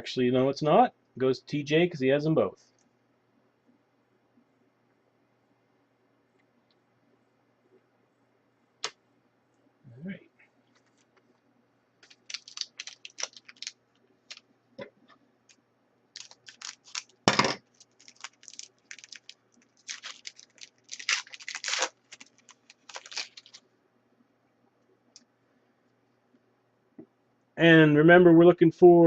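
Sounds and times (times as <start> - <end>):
card pack wrapper crinkling and tearing: 12.0 - 14.4, 16.1 - 23.6
cards being handled: 12.0 - 14.4, 16.2 - 23.6.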